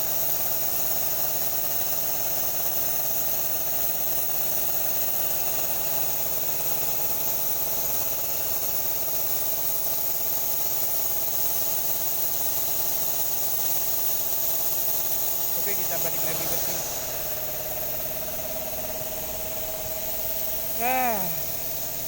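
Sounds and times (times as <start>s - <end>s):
engine idling: 12.9s - 22.0s.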